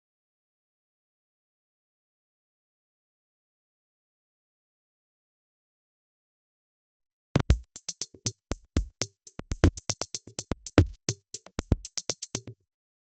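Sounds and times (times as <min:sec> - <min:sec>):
rapid drum hits: 0:07.4 - 0:12.5.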